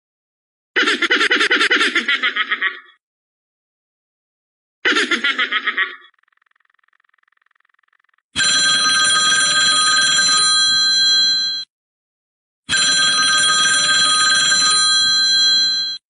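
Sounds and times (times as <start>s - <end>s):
rapidly pulsing giggle-like sound: 0.8s - 3.0s, 4.8s - 8.2s
telephone bell ringing: 7.4s - 11.7s, 12.7s - 16.0s.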